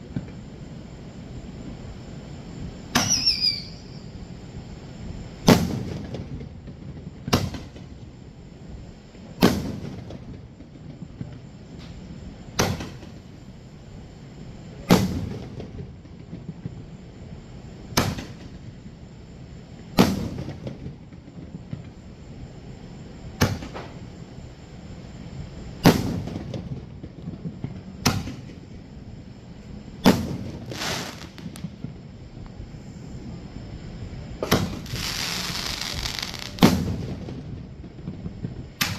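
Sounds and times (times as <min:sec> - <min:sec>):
fireworks booming: 0:05.3 - 0:08.0, 0:09.2 - 0:13.4, 0:14.8 - 0:18.9, 0:19.8 - 0:22.0, 0:23.3 - 0:24.2, 0:25.6 - 0:29.0, 0:29.9 - 0:32.1, 0:34.4 - 0:38.9.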